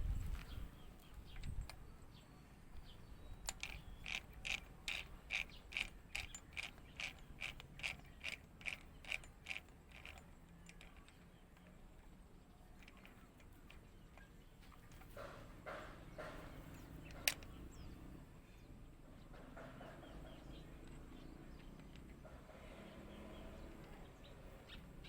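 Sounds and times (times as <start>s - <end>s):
mechanical clicking: 3.2s - 11.8s, 16.4s - 17.6s.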